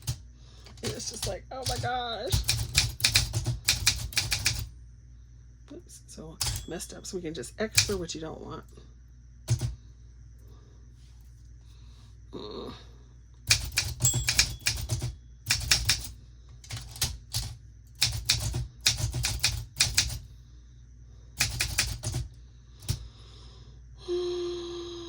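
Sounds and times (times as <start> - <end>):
typewriter keys striking: 0.0 - 4.7, 7.7 - 8.0, 9.5 - 9.7, 13.5 - 20.2, 21.4 - 23.0.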